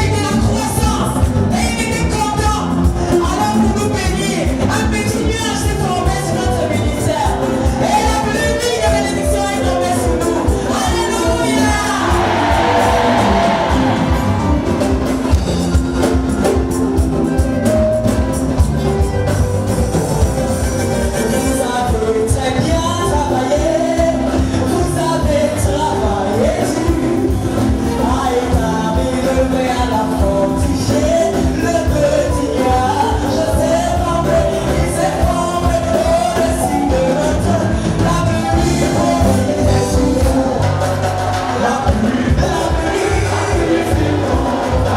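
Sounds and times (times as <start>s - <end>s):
bass: 0.0s - 44.9s
drum kit: 0.0s - 44.9s
full band playing: 0.0s - 44.9s
guitar: 0.0s - 44.9s
voices singing gospel: 3.4s - 16.6s, 21.2s - 44.9s.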